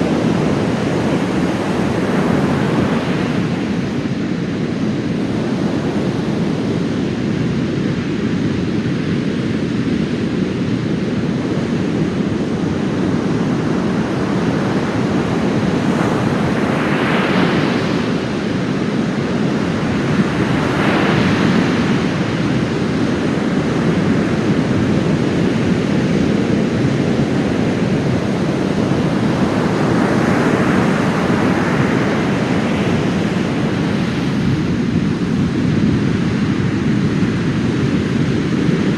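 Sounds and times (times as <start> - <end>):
waves crashing: 0.0 - 4.6, 14.3 - 23.2, 27.0 - 37.4
deep rumble of surf: 0.0 - 38.9.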